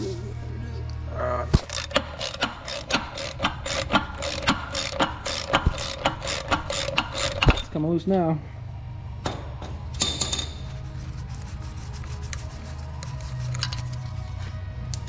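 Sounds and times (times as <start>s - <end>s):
ratchet wrench clicking: 1.6s - 7.7s.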